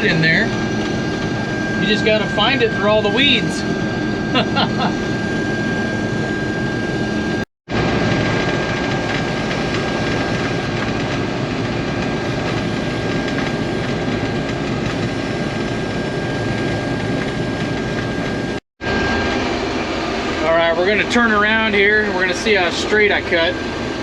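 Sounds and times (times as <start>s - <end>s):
combine harvester drone: 0.0s - 24.0s
steady high whine: 0.0s - 24.0s.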